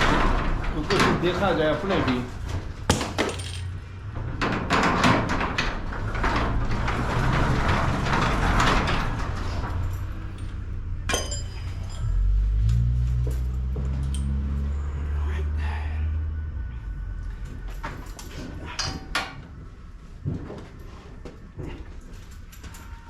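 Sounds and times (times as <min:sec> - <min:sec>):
garage door rattling on rollers: 0:00.0 - 0:02.5, 0:03.1 - 0:10.7.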